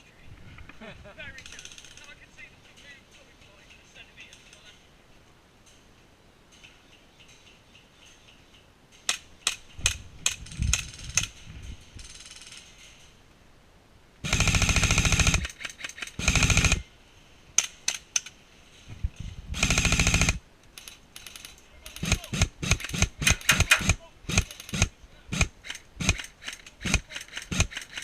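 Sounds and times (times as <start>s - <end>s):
sharp clicks and cracks: 8.9s - 11.4s, 14.2s - 16.8s, 17.6s - 18.4s, 19.2s - 28.0s
airsoft gun full-auto bursts: 14.2s - 16.9s, 19.6s - 28.0s.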